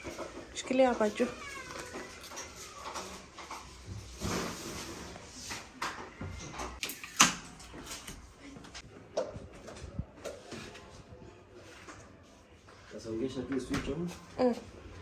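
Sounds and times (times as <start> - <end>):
refrigerator being moved: 0.0 - 6.8.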